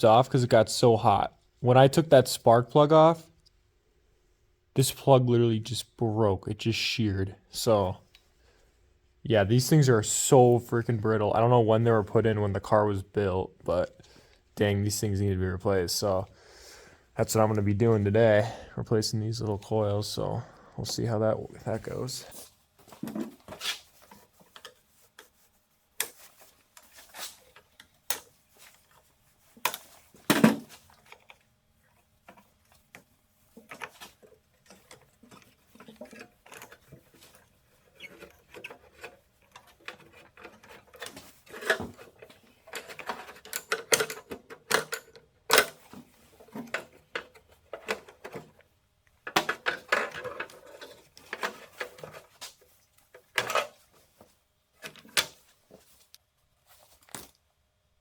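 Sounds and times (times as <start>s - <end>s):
tools and metal parts clinking: 33.6s - 46.0s.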